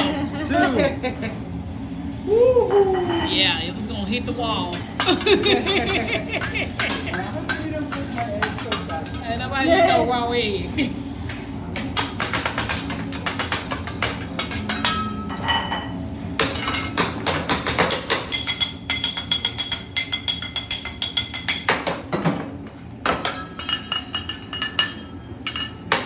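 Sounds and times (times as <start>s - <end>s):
spatula and knife clacking on griddle: 4.7s - 9.5s, 11.8s - 15.6s, 16.4s - 22.3s, 23.0s - 26.0s.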